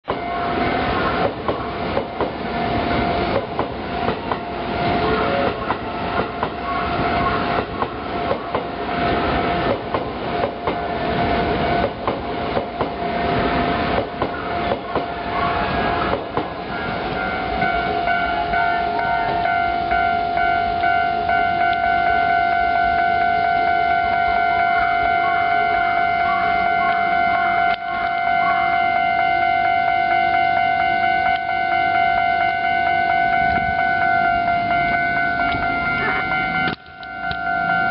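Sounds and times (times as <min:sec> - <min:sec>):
crossing warning bell ringing: 0:00.1 - 0:37.9
train wheels clacking over rail joints: 0:01.2 - 0:02.4, 0:03.3 - 0:04.5, 0:05.4 - 0:06.7, 0:07.5 - 0:08.8, 0:09.6 - 0:10.9, 0:11.8 - 0:13.0, 0:13.9 - 0:15.2, 0:16.0 - 0:16.6.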